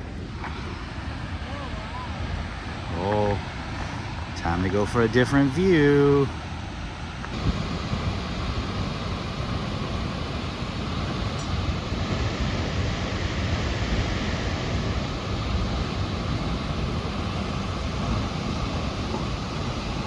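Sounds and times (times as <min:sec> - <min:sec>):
waterfall rushing: 0:07.4 - 0:20.0.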